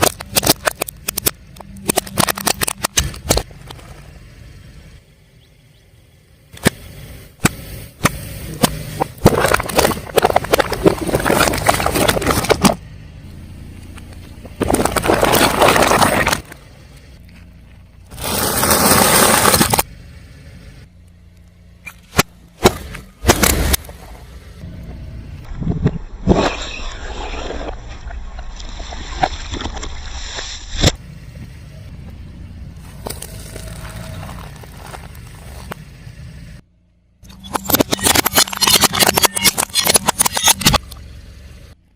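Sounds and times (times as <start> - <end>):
low engine rumble: 0.0 - 29.8, 30.9 - 38.6, 39.6 - 41.9
tyre crunching objects: 7.4 - 12.9, 13.8 - 19.9, 21.9 - 24.3, 32.8 - 36.1.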